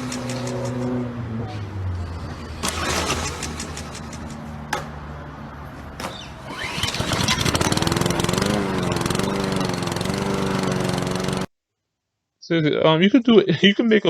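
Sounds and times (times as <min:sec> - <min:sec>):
starter cord pull: 0:00.0 - 0:00.9, 0:02.6 - 0:04.9, 0:06.0 - 0:11.5
lawnmower engine starting: 0:00.0 - 0:01.0, 0:02.3 - 0:05.1, 0:06.0 - 0:11.5.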